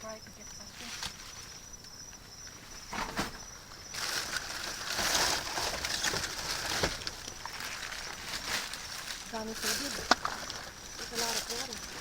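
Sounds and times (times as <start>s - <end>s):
plastic and cardboard rustling: 2.9s - 12.0s.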